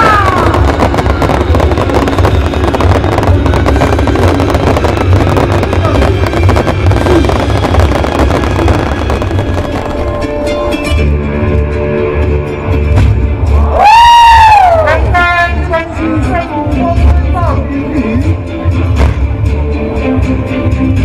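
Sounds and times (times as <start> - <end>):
fireworks crackling and banging: 0.0 - 13.5, 18.8 - 19.5
heavy low rumble: 0.0 - 13.9.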